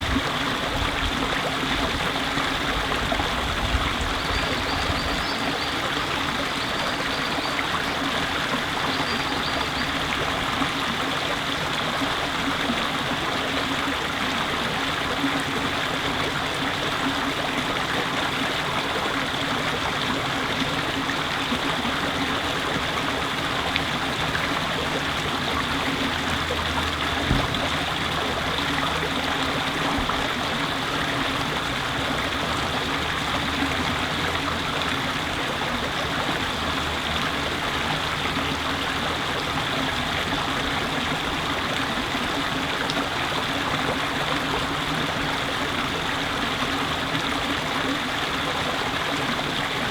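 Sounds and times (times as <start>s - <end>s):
water rushing: 0.0s - 49.9s
low thump: 27.2s - 27.7s.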